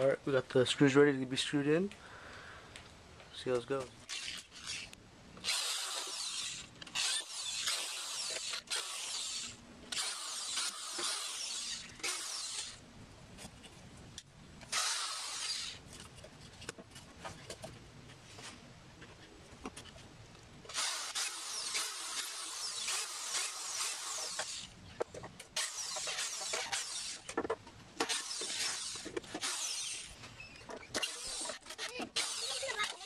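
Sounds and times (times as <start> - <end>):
power drill driving screws: 4.0 - 12.8, 14.7 - 15.8, 20.7 - 24.7, 25.6 - 27.4, 28.0 - 33.0.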